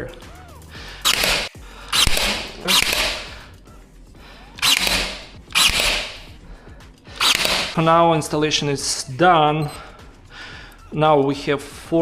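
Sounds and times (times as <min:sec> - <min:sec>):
pin nailer firing: 0:01.0 - 0:03.4, 0:04.6 - 0:06.3, 0:07.2 - 0:07.9.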